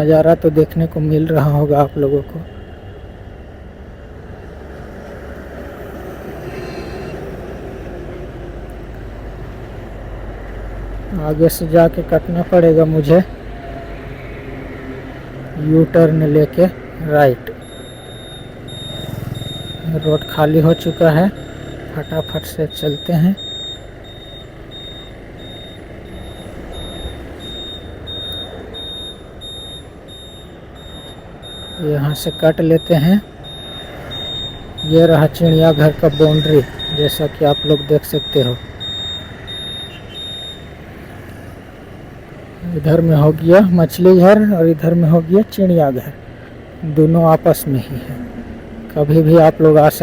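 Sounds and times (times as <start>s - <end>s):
motorcycle engine and road noise: 0.0s - 50.0s
turn indicator beeping: 8.7s - 48.2s.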